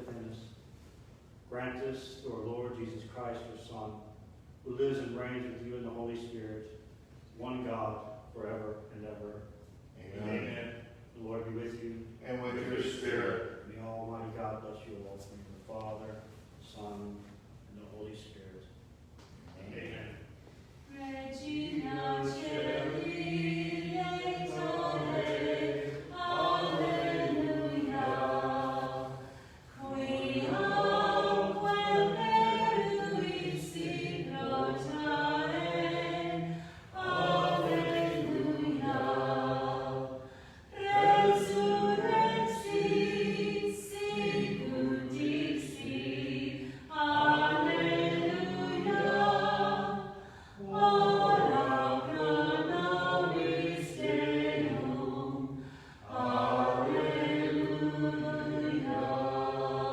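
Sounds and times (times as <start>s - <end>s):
voices singing a hymn: 10.0s - 17.3s, 19.7s - 59.9s.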